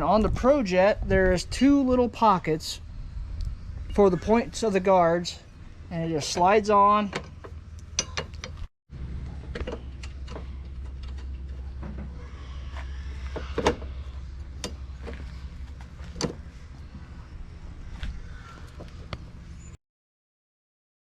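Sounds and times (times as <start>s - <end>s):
steady low hum: 0.0s - 19.8s
light metal clicks and knocks: 6.3s - 8.7s.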